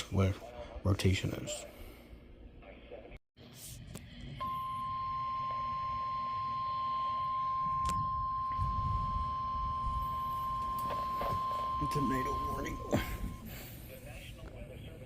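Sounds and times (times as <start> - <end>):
steady alarm beep: 4.3 - 13.7.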